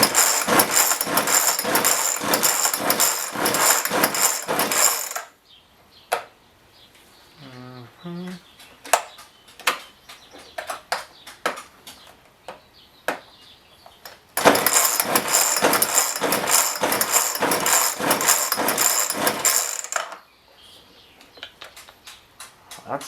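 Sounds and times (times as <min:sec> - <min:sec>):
chainsaw engine running: 0:00.0 - 0:05.3, 0:14.4 - 0:20.2.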